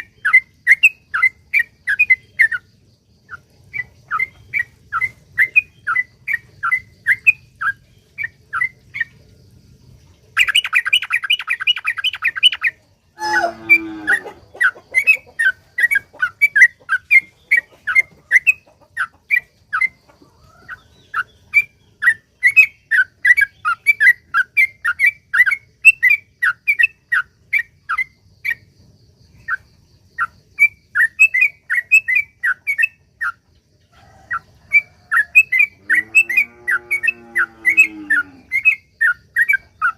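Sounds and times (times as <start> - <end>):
bird chirping: 0.0 - 39.9
falling bird call: 13.2 - 15.3.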